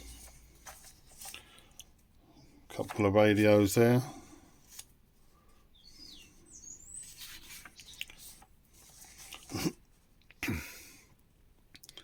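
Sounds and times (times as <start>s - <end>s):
magazine pages rustling: 0.0s - 1.7s, 2.8s - 3.5s, 4.6s - 4.9s, 6.9s - 9.6s.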